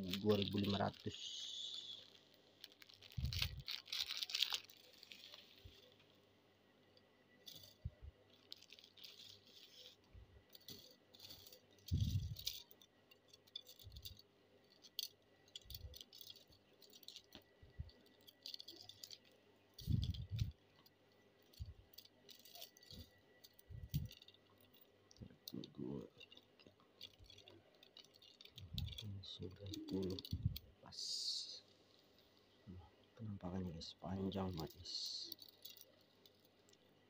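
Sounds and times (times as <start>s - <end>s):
packaging rustling: 0.0s - 6.1s, 7.5s - 12.6s, 25.5s - 30.5s
plastic floats rattling and clicking: 14.8s - 30.7s, 34.5s - 36.8s.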